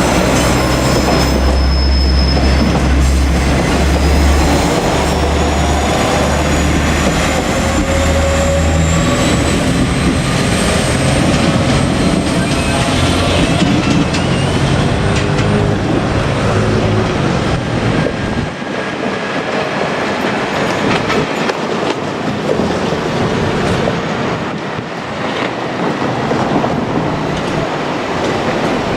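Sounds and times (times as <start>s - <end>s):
diesel engine: 0.0s - 18.5s
train rolling noise: 0.0s - 28.9s
train wheels clattering: 17.9s - 28.9s.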